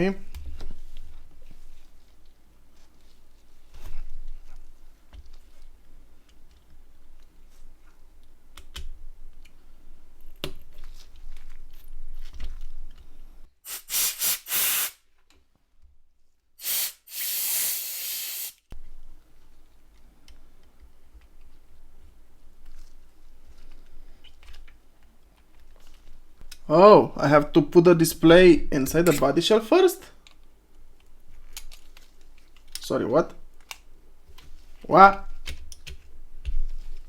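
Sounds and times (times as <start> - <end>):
air spray hissing: 13.6 - 15.0, 16.6 - 18.7.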